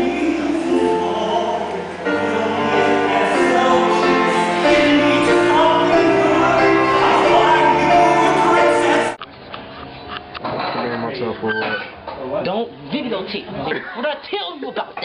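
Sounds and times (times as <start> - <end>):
musical accompaniment: 0.0 - 9.2
voices holding long notes: 0.0 - 9.2.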